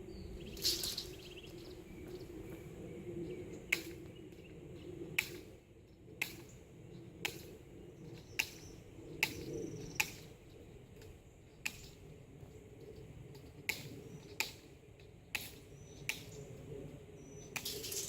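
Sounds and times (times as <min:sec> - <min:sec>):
wire cutters snipping fencing: 0:17.5 - 0:18.0.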